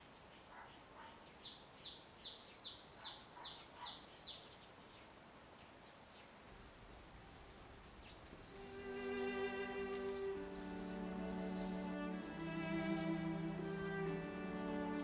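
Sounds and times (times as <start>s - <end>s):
lower bird calls: 0.0s - 14.9s
bird singing high sliding notes: 6.8s - 15.0s.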